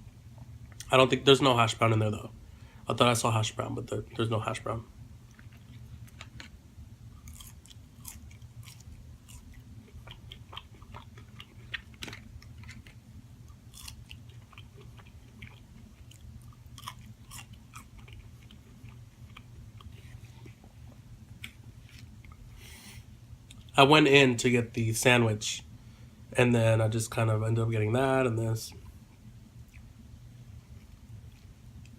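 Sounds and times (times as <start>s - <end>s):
steady low hum: 0.0s - 31.9s
person chewing food: 5.2s - 23.7s, 28.8s - 31.9s.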